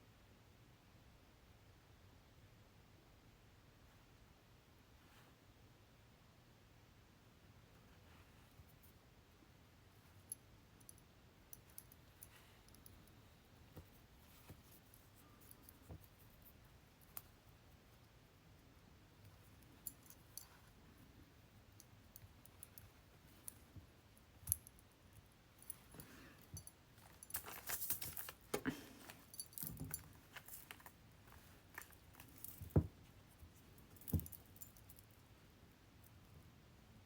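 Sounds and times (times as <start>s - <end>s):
beads and tools clicking: 25.6s - 32.8s.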